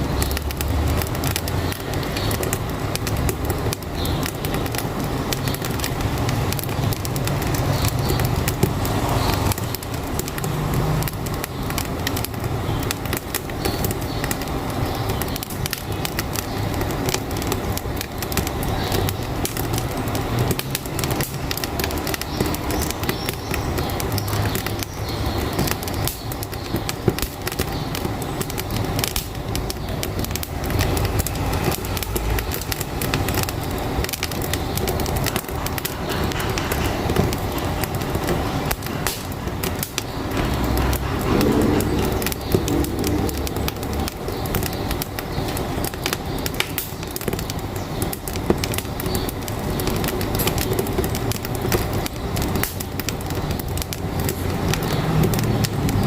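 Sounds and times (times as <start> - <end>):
truck engine rumbling: 0.0 - 56.0
wood fire crackling in a stove: 0.0 - 56.0.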